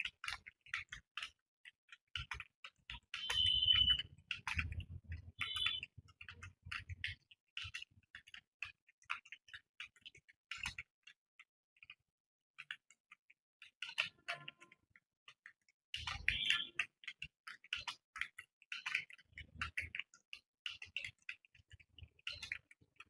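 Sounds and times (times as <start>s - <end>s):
keyboard typing: 2.2s - 7.9s, 16.0s - 16.9s.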